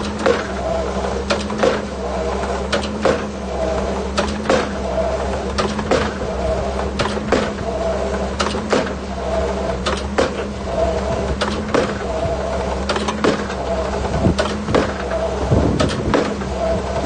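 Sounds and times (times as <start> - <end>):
excavator running: 0.0 - 17.0
sharp knocks of pile driving: 1.3 - 1.9, 2.7 - 3.4, 4.2 - 4.8, 5.5 - 6.3, 6.9 - 7.7, 8.4 - 9.0, 9.7 - 10.5, 11.1 - 12.2, 12.9 - 16.6.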